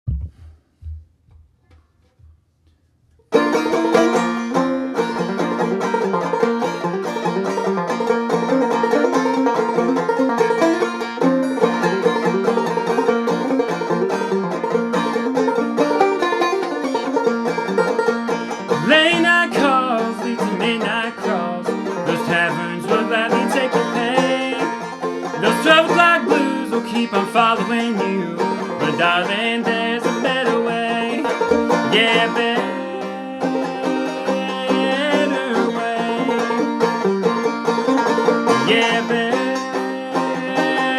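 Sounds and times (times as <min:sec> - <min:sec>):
faint low thumps: 0:00.0 - 0:02.4
clawhammer banjo playing: 0:03.3 - 0:40.9
sliding instrument notes: 0:03.3 - 0:40.9.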